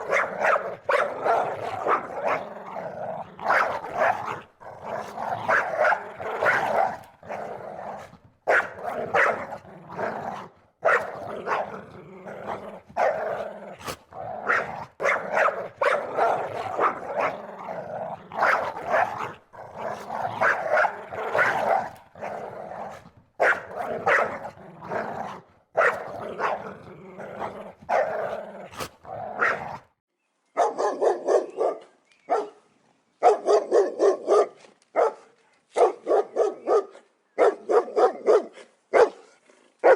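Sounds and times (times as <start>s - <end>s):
dog barking: 0.0s - 2.5s, 3.4s - 4.4s, 5.0s - 7.4s, 8.0s - 9.6s, 10.8s - 11.8s, 12.4s - 17.7s, 18.3s - 25.0s, 25.8s - 26.7s, 27.4s - 29.8s, 30.6s - 32.6s, 33.2s - 39.9s
rapid short dog barks: 33.2s - 39.9s.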